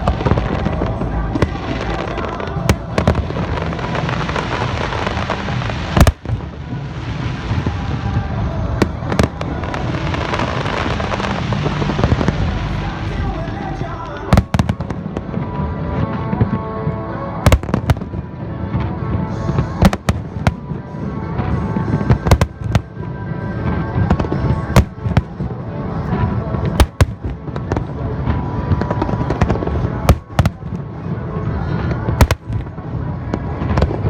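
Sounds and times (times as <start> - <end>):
fireworks bursting in sharp bangs: 0.0 - 12.6, 14.3 - 15.6, 17.4 - 18.3, 19.5 - 21.0, 21.8 - 23.0, 24.0 - 25.5, 26.6 - 27.9, 28.8 - 30.9, 32.1 - 33.0
music playing: 0.0 - 34.0.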